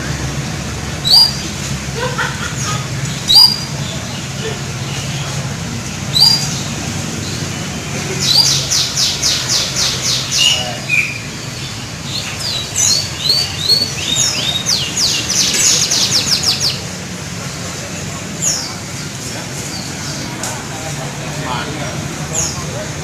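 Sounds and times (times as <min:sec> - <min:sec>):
canary singing: 0:00.0 - 0:16.9.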